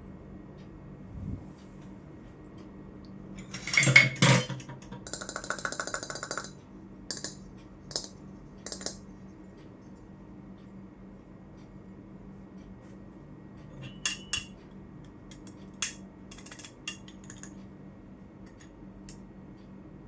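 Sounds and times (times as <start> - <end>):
toy kitchenware clattering: 3.4 - 6.1, 16.3 - 17.5.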